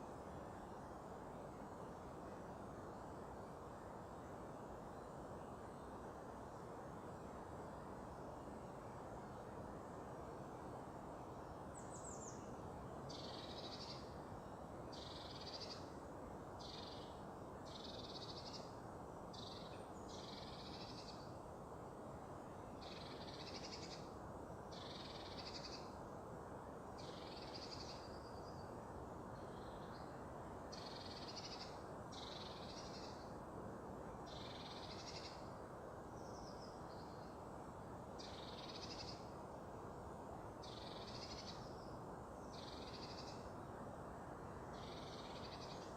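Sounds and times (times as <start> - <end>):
songbird singing: 11.3 - 21.5, 22.4 - 26.0, 26.9 - 33.4, 34.1 - 43.8, 44.6 - 45.9.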